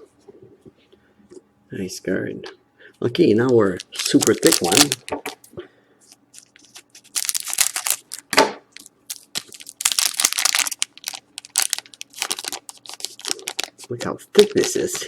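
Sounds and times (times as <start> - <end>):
card pack wrapper tearing and crinkling: 3.8 - 5.4, 6.3 - 15.0.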